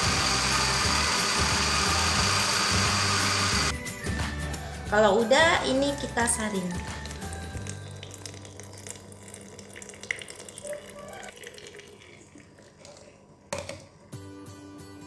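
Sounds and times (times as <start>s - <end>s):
juice pouring through a strainer: 7.0s - 13.2s.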